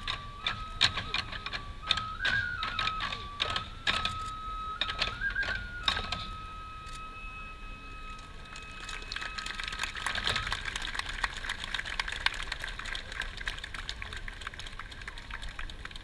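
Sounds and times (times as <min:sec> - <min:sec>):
bamboo flute note: 0:00.0 - 0:09.6
hand clapping: 0:08.8 - 0:16.0.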